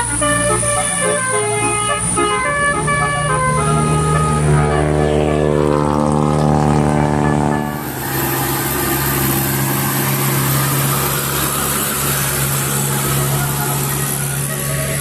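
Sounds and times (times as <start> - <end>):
bus engine humming: 0.0 - 15.0.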